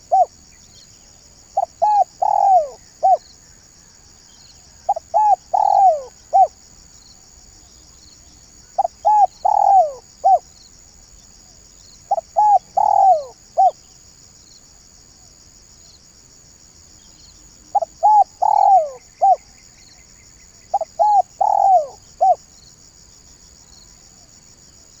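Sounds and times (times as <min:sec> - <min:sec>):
dove cooing: 0:00.0 - 0:00.3, 0:01.6 - 0:03.2, 0:04.9 - 0:06.6, 0:08.8 - 0:10.4, 0:12.1 - 0:13.8, 0:17.7 - 0:19.4, 0:20.7 - 0:22.4
high insect trill: 0:00.0 - 0:25.0.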